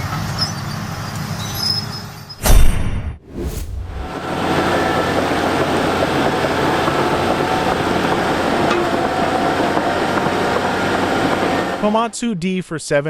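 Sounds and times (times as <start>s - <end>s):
diesel engine drone: 3.6s - 12.2s
bulldozer tracks clattering: 4.3s - 12.0s.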